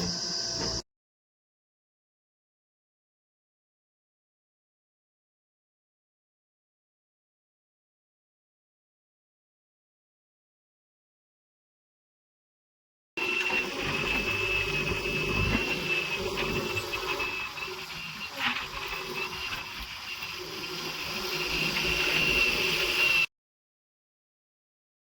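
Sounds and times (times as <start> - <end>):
backhoe loader engine with whine: 0.0 - 0.8, 13.2 - 23.3.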